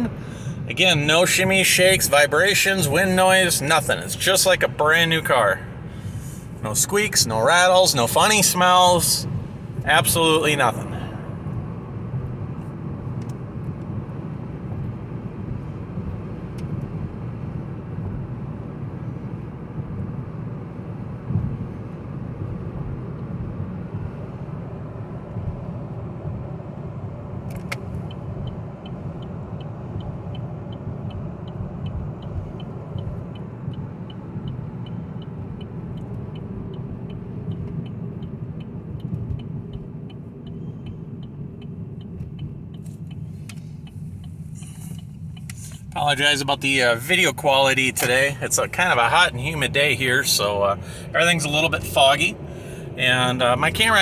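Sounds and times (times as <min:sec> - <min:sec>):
regular light ticking: 0:27.5 - 0:48.6
tyre and road rumble: 0:39.1 - 0:54.0.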